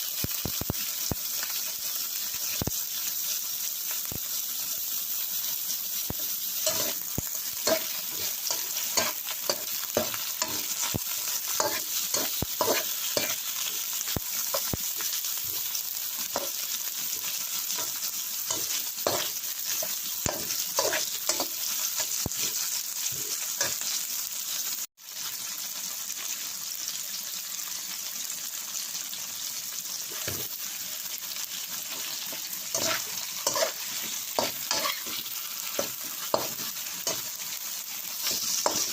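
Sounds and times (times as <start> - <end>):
food sizzling in hot oil: 0.0 - 38.9
spatula knocking and scraping pan: 6.7 - 7.0, 7.6 - 10.9, 11.6 - 13.4, 17.8 - 22.1, 32.3 - 35.2, 35.8 - 37.3, 38.2 - 38.9.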